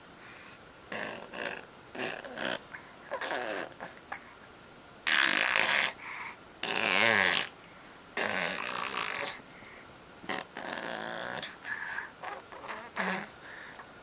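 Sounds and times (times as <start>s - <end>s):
baby making farting noises: 0.9s - 4.0s, 5.0s - 6.0s, 6.6s - 7.5s, 8.2s - 9.4s, 12.2s - 13.3s.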